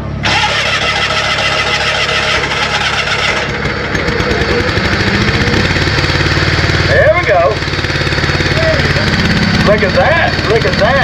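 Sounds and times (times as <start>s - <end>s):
lawn tractor engine running: 0.0s - 11.0s.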